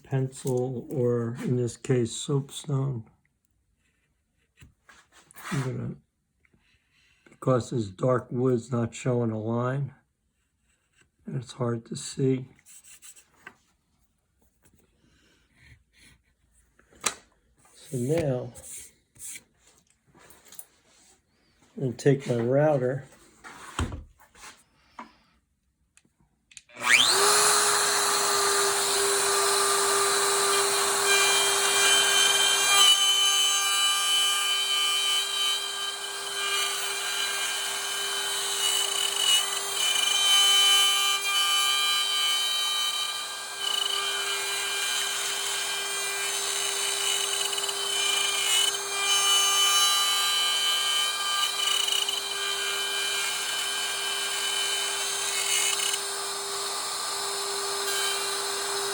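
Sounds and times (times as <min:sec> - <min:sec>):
router motor whining: 0:26.7 - 0:58.9.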